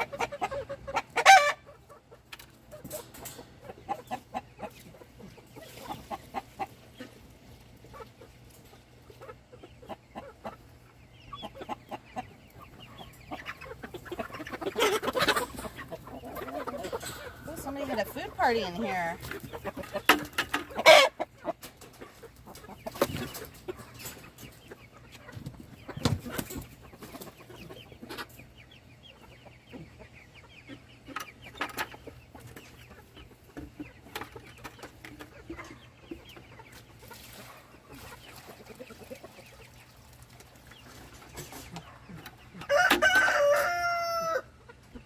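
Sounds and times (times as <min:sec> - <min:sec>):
chickens clucking: 0:00.0 - 0:45.0
rooster crowing: 0:42.6 - 0:44.5.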